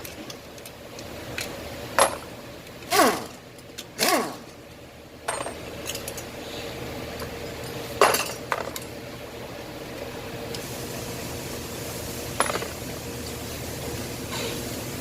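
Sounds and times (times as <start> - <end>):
steady background hum: 0.0 - 15.0
metal tools clinking: 1.4 - 2.3, 5.3 - 6.4, 12.4 - 12.8.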